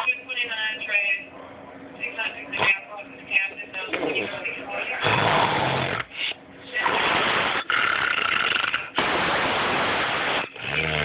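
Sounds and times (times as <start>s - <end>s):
man snoring loudly: 5.0s - 6.1s, 7.3s - 8.9s, 10.6s - 11.0s.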